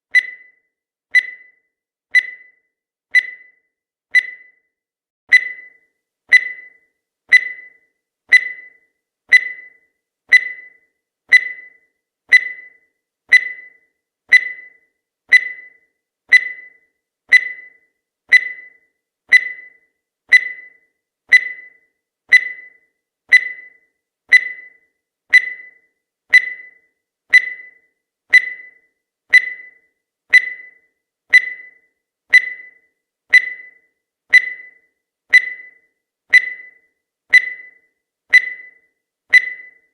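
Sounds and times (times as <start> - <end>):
countdown timer ticking: 0.1 - 4.6, 5.3 - 39.9.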